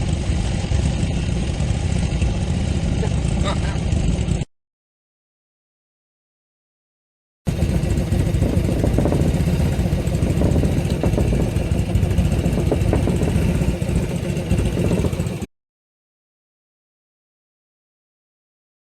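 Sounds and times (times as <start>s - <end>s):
small engine rumbling: 0.0s - 4.5s, 7.5s - 15.5s.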